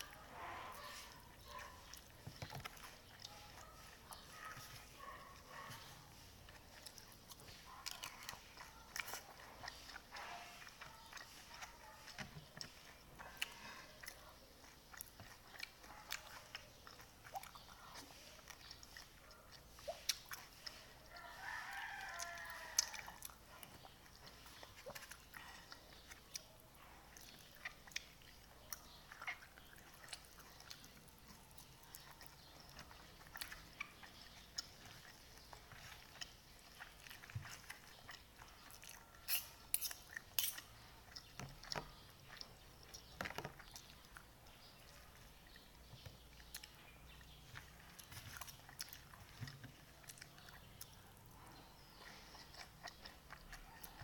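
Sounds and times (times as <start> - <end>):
chewing and biting noodles: 0.0 - 54.0
rooster crowing: 21.2 - 23.0.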